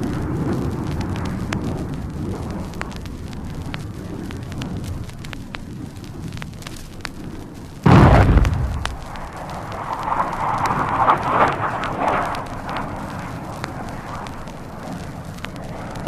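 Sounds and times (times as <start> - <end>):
low rumble of blast: 0.0 - 16.0
scattered crackles: 0.0 - 16.0
loud explosion: 7.8 - 13.2.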